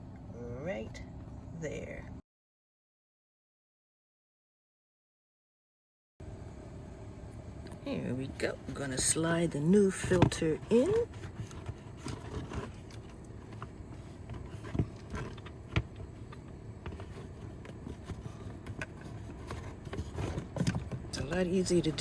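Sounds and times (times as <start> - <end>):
filter scraping in housing: 7.7 - 22.0.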